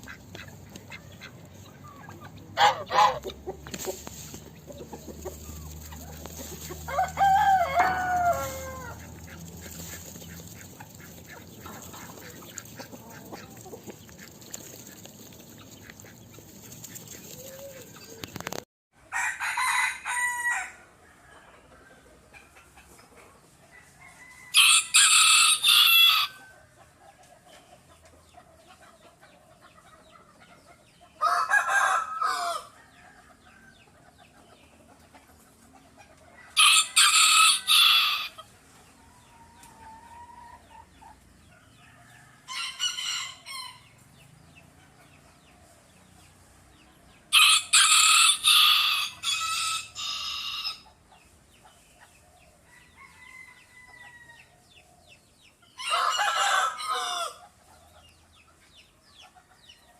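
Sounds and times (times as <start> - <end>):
faint chicken clucking: 0.0 - 59.9
rooster crowing: 6.8 - 9.1, 19.1 - 21.4, 23.9 - 26.5, 31.2 - 33.4, 36.6 - 38.5, 41.9 - 43.8, 47.3 - 50.8, 55.8 - 57.4.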